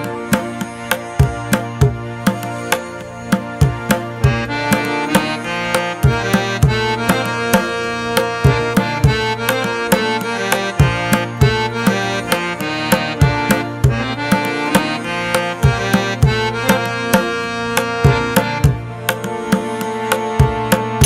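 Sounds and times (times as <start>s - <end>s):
hand drum beat: 0.0s - 14.9s
held melodic notes: 0.0s - 21.0s.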